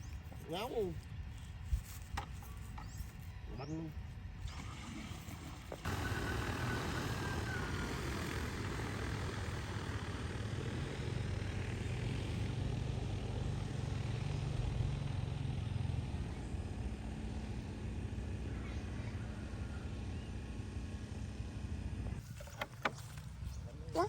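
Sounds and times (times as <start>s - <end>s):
drone rotors: 4.3s - 14.0s.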